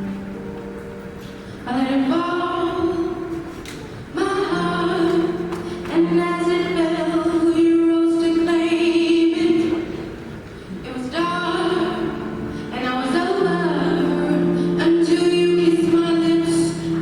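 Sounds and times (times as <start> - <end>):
woman singing a pop ballad: 1.6 - 10.0, 10.8 - 17.0.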